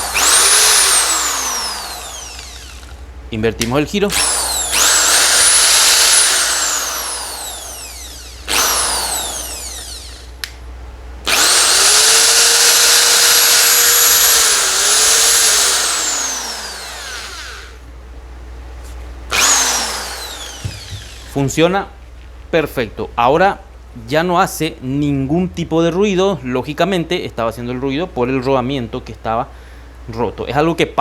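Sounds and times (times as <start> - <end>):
electric drill motor whining: 0.0 - 3.1, 4.1 - 10.4, 11.2 - 17.9, 19.3 - 21.5.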